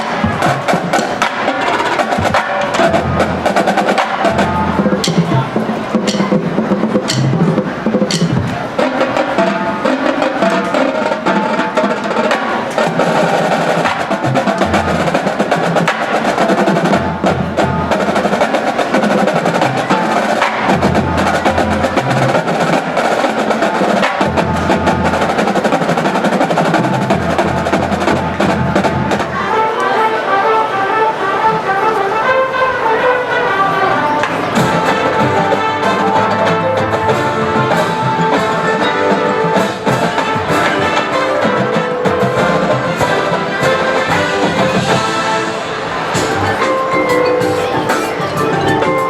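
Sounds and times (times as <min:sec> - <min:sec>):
snare drums: 0:00.0 - 0:30.0, 0:33.6 - 0:49.0
brass horns: 0:00.0 - 0:49.0.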